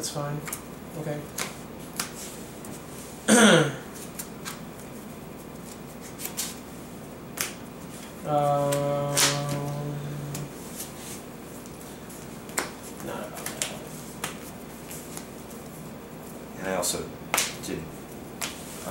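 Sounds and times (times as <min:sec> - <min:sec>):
playing cards clicking on table: 0:01.3 - 0:02.2, 0:12.5 - 0:12.8, 0:13.4 - 0:14.4, 0:18.4 - 0:18.6
hummed tone: 0:08.2 - 0:10.8.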